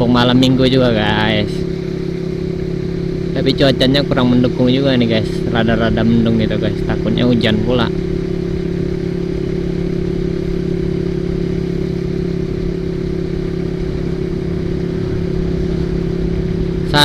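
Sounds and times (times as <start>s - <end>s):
motorcycle engine running steadily: 0.0s - 17.0s
road rumble: 0.0s - 17.0s
wind: 0.0s - 17.0s.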